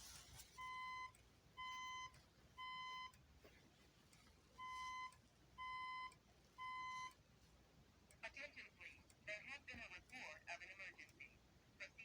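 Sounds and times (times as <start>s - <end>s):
fire alarm beeping: 0.6s - 3.2s, 4.6s - 7.2s.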